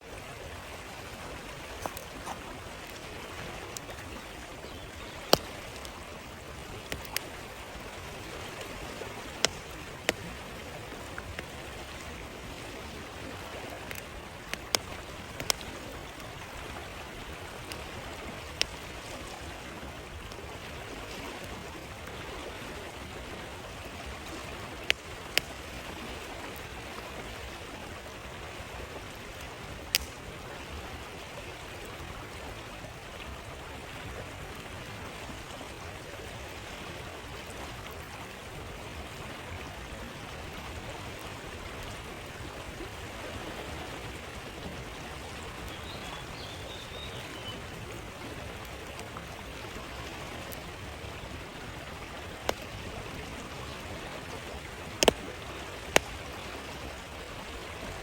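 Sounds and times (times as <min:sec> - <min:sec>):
stream flowing: 0:00.0 - 0:58.0
campfire popping and crackling: 0:00.1 - 0:32.3, 0:46.6 - 0:58.0.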